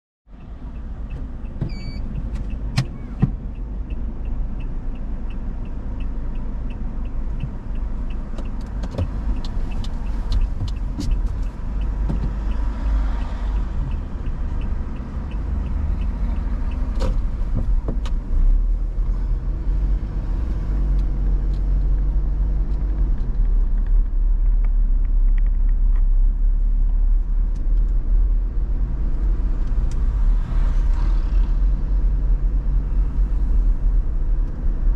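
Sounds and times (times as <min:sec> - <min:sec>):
car engine and road noise: 0:00.2 - 0:34.9
regular light ticking: 0:03.4 - 0:18.8.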